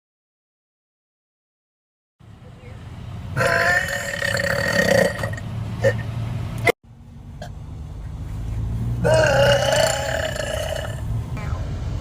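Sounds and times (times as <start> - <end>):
person belching: 3.4 - 6.0, 9.0 - 11.0.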